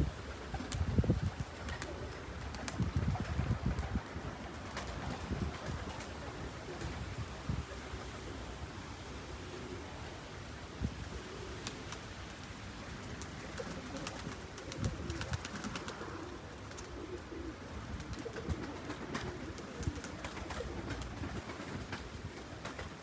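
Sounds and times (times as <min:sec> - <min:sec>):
wind buffeting microphone: 0:00.0 - 0:07.8, 0:14.0 - 0:15.8.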